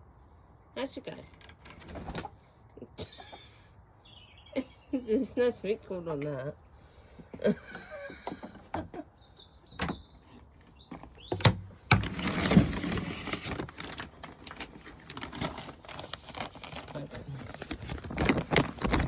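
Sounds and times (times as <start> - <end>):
hens pecking and scratching feed: 12.0 - 19.0.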